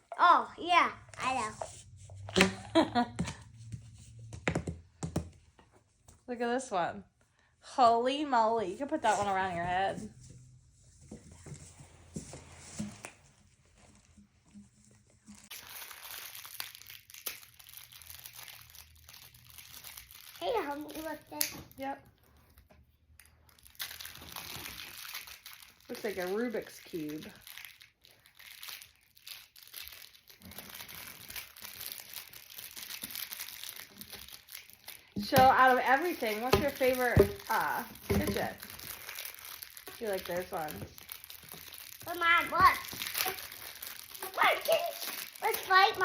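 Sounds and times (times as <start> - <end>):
plastic fidget toys crinkling: 15.0 - 46.0.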